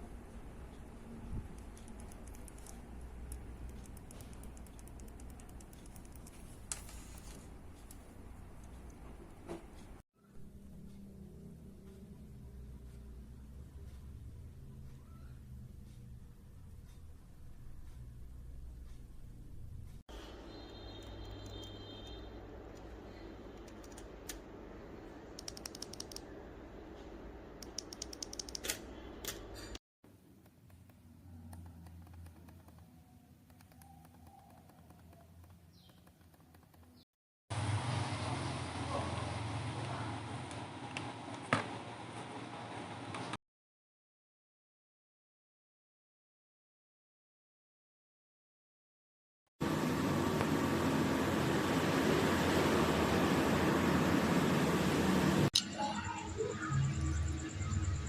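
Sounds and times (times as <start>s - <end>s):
mouse switch clicking: 25.4s - 26.2s, 27.6s - 29.4s.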